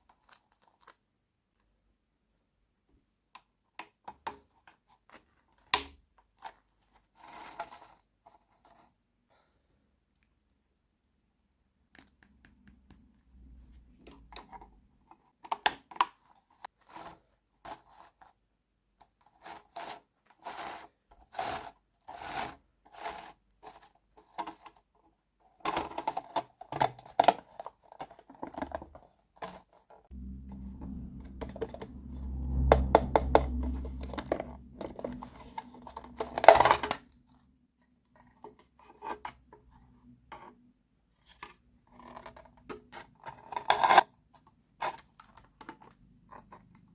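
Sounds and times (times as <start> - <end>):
steady low hum: 30.1 - 36.5.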